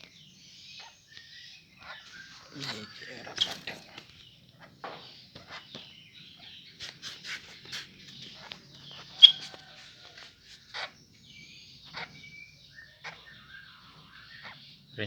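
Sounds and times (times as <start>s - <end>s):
bird chirps and clicks: 0.0s - 6.5s, 7.6s - 10.2s
bird whistled notes: 9.2s - 9.8s.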